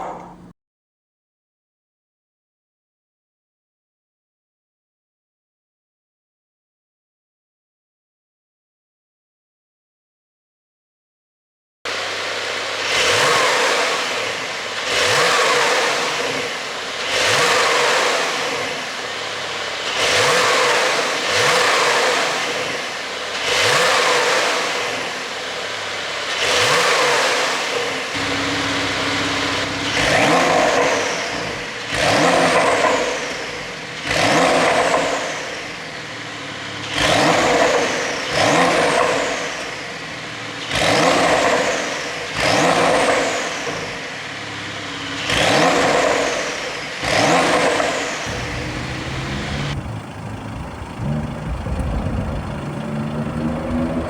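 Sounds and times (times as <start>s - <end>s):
car engine revving in blips: 28.2s - 33.3s, 47.0s - 54.0s
exhaust pops: 48.3s - 53.8s.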